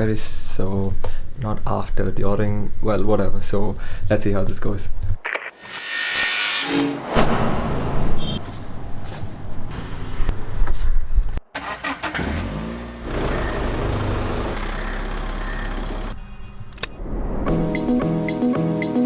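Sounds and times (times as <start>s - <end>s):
car engine running: 11.6s - 16.2s.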